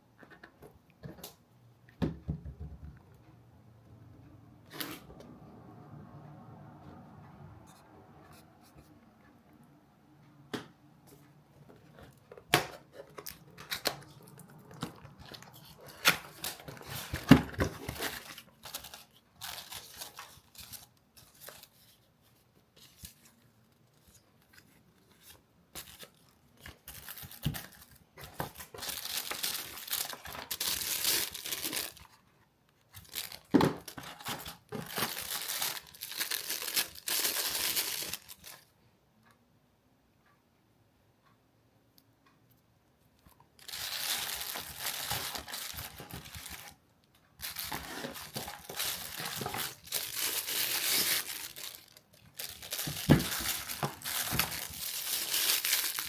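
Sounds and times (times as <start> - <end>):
rustling crinkling material: 11.2 - 38.7, 43.6 - 56.0.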